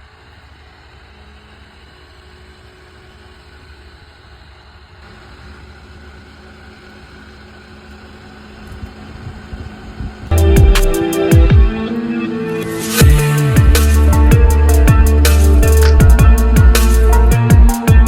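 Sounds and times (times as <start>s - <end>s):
cooling fan humming: 0.0s - 18.0s.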